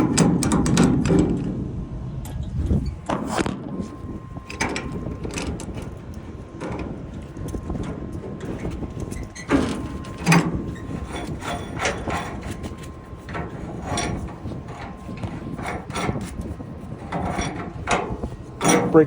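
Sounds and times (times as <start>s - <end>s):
metallic clicks and scrapes: 2.3s - 19.0s
wrench loosening metal pipe: 8.5s - 19.0s.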